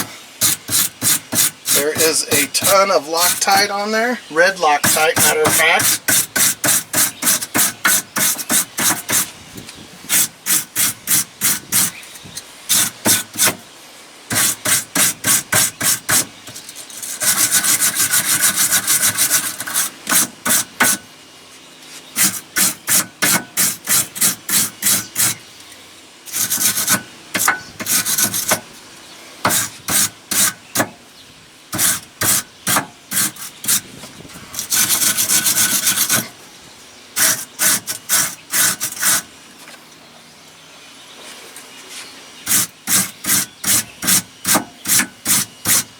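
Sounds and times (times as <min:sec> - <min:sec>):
wire brush scraping metal: 0:00.0 - 0:03.7, 0:04.8 - 0:09.4, 0:10.1 - 0:13.6, 0:14.3 - 0:21.0, 0:22.1 - 0:25.4, 0:26.3 - 0:28.7, 0:29.5 - 0:30.9, 0:31.7 - 0:36.4, 0:37.2 - 0:39.3, 0:42.5 - 0:45.9.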